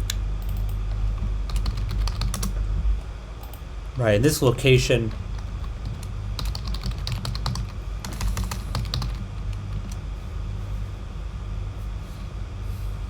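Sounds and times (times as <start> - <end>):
steady low hum: 0.0 - 13.0
typing on keyboard: 0.1 - 2.5, 5.1 - 10.0.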